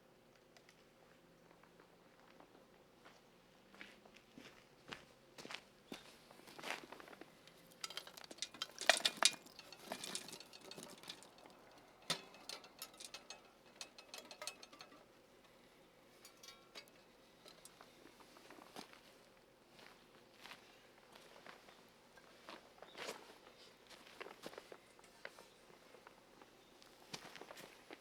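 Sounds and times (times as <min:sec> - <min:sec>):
metal camping gear clinking: 0:07.4 - 0:18.2
ringing metallic clink: 0:07.8 - 0:15.1, 0:16.2 - 0:17.8.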